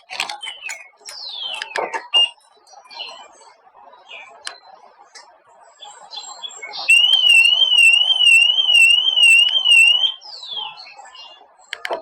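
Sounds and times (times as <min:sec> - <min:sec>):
car alarm siren warbling: 0:06.9 - 0:10.2.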